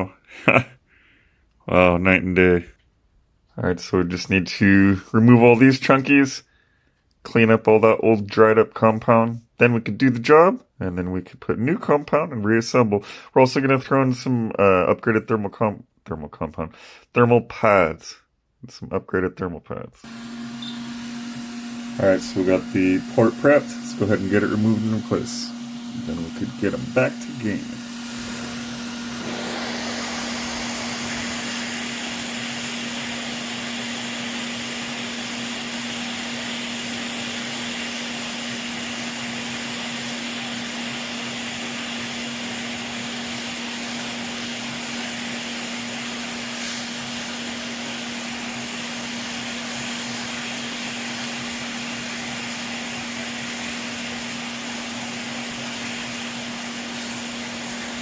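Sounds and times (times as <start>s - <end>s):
hot air blowing: 0.0s - 0.6s, 20.0s - 58.0s
fan hum: 20.1s - 58.0s.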